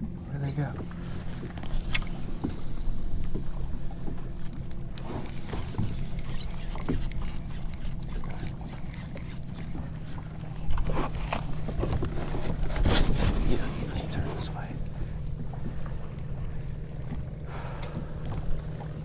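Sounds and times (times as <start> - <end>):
steady low hum: 0.0 - 19.0
water around kayak hull: 0.0 - 19.0
paddle splashing: 0.7 - 19.0.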